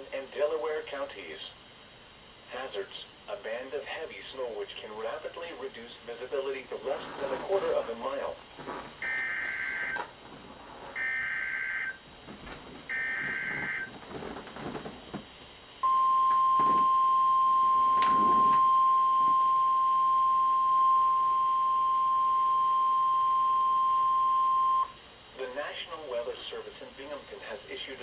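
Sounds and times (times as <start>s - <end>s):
steady loud alert tone: 9.0s - 10.0s, 11.0s - 12.0s, 12.9s - 13.9s.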